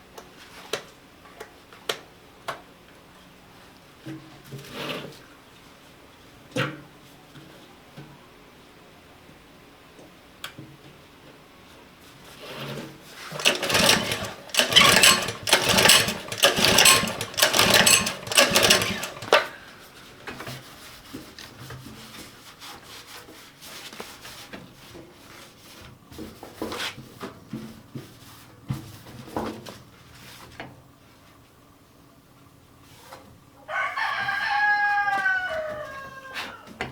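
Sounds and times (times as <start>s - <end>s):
handling clicks and knocks: 13.3s - 19.7s.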